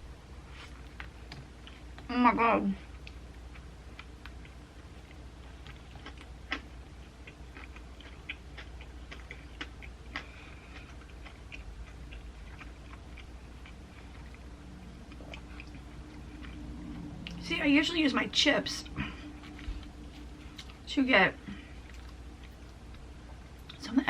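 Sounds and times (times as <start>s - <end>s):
low hum: 0.0s - 24.0s
chewing with wet mouth clicks: 2.9s - 17.4s, 18.8s - 20.8s, 21.5s - 23.9s.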